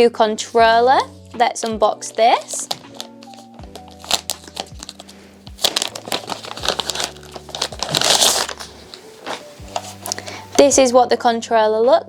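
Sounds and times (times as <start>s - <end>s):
packaging crinkling and rustling: 2.4s - 10.7s.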